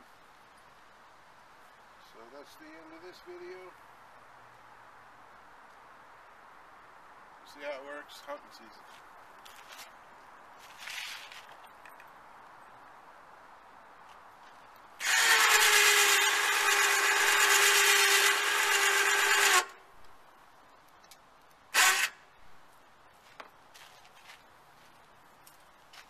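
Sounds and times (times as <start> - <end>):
small electric motor running: 15.0 - 19.8, 21.8 - 22.2.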